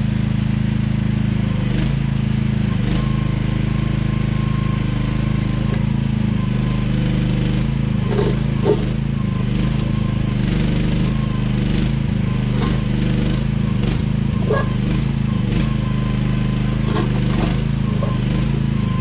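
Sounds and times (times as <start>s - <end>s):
excavator engine running: 0.0s - 19.0s
metal clunks: 8.1s - 9.0s, 12.5s - 13.0s, 16.8s - 18.6s.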